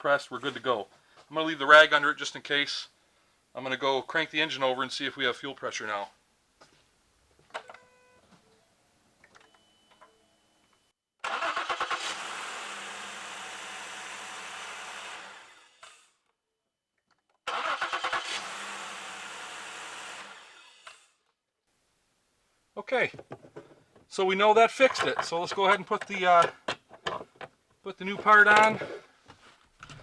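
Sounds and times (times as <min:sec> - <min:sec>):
car engine cranking and starting: 0:11.2 - 0:13.6, 0:17.5 - 0:19.3, 0:22.9 - 0:29.0.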